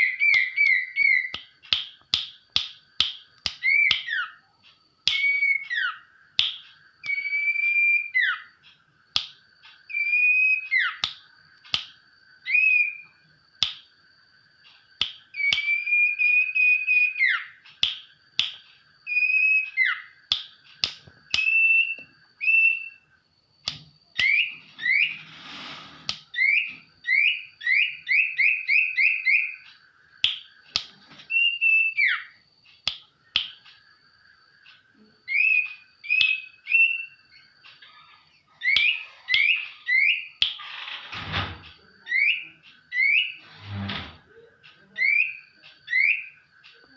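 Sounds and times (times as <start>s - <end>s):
songbird singing whistled phrases: 0.0s - 2.0s, 3.1s - 8.6s, 9.9s - 11.2s, 12.4s - 13.2s, 15.3s - 20.5s, 21.3s - 23.2s, 24.1s - 25.2s, 26.3s - 32.4s, 35.2s - 40.6s, 42.0s - 43.4s, 44.9s - 46.9s
sharp bird clicks: 0.0s - 4.4s, 5.0s - 12.9s, 14.6s - 22.9s, 26.1s - 34.0s, 34.6s - 40.6s.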